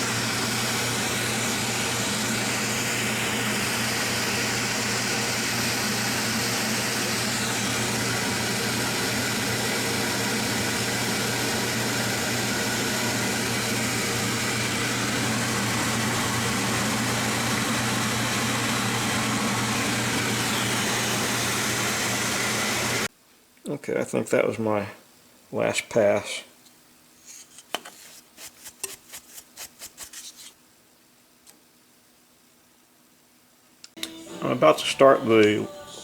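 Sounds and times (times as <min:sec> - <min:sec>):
metal lathe running: 0:00.0 - 0:23.1.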